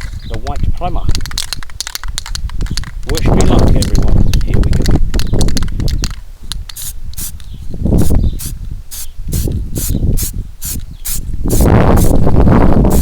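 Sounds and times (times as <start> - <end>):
wind buffeting microphone: 0.0 - 13.0
spray can hissing in bursts: 6.7 - 7.4, 8.0 - 12.2.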